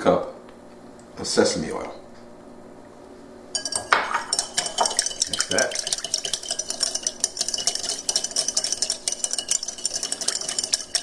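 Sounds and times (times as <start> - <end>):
utensil stirring in a bowl: 3.6 - 11.0.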